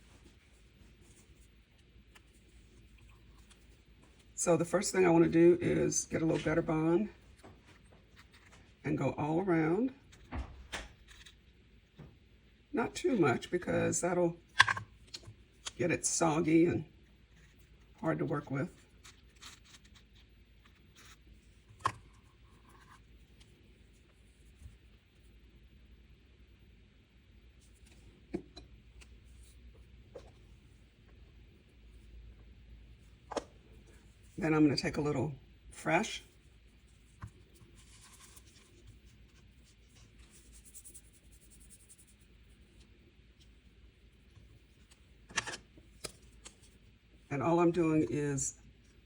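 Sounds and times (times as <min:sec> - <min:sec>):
hands and tools scratching clay: 0:36.6 - 0:43.5.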